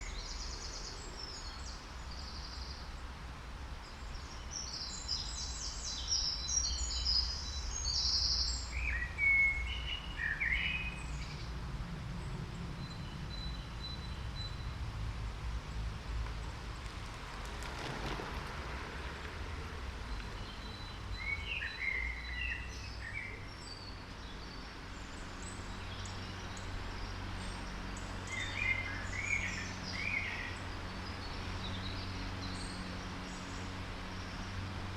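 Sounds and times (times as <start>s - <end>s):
birds chirping: 3.8s - 11.6s, 20.0s - 34.7s.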